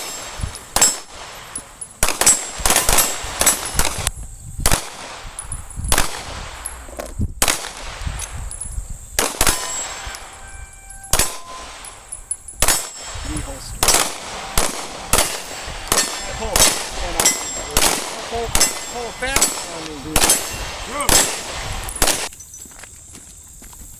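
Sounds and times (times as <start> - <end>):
pistol shots: 0.0 - 22.3.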